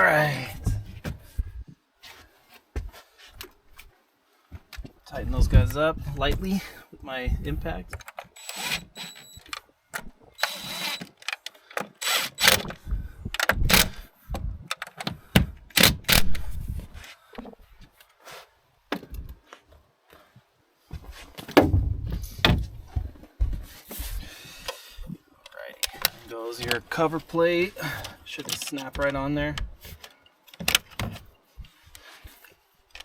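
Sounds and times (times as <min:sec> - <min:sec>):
tools clicking and clattering: 0:21.6 - 0:22.9.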